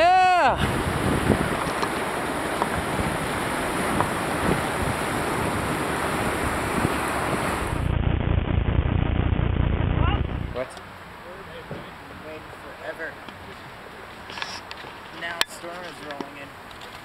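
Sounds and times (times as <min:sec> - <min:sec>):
river rapid roaring: 0:00.0 - 0:07.9
wind on microphone: 0:00.0 - 0:10.6.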